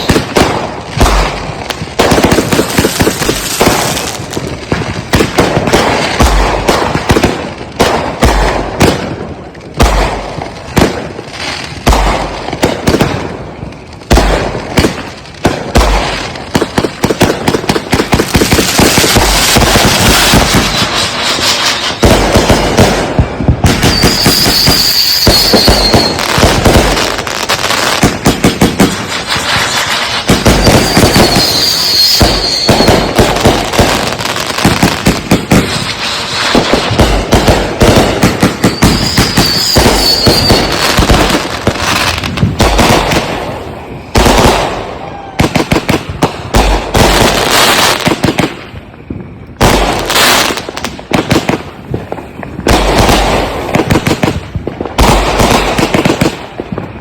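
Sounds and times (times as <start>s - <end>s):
high firework whistle: 0.0s - 0.4s, 19.1s - 22.6s, 23.7s - 27.9s, 28.8s - 34.6s, 38.2s - 45.6s
fireworks bangs and crackle: 0.0s - 57.0s.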